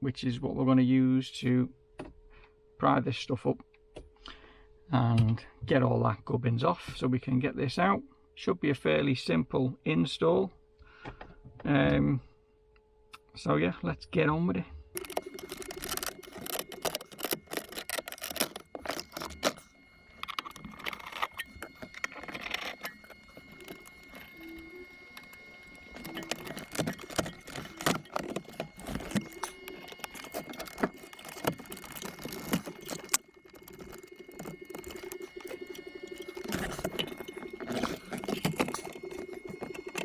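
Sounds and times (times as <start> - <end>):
plastic trim clicking and snapping: 15.0 - 40.0.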